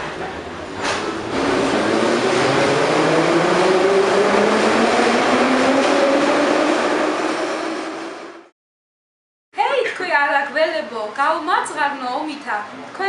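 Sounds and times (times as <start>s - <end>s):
loud rushing noise: 0.0s - 8.5s
vehicle engine rising: 0.0s - 8.5s.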